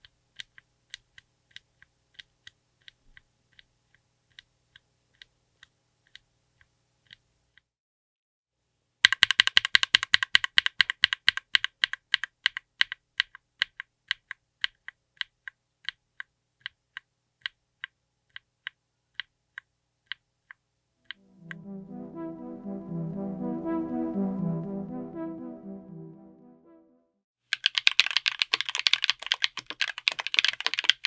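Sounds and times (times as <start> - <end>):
typing on mechanical keyboard: 9.0 - 17.6, 27.5 - 31.0.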